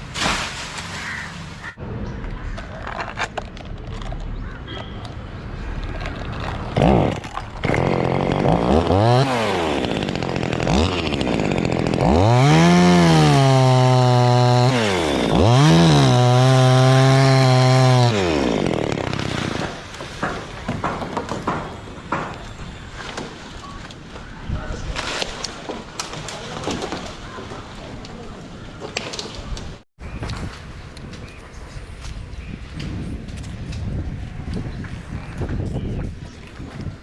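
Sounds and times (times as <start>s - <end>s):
chainsaw revving: 6.7s - 19.8s.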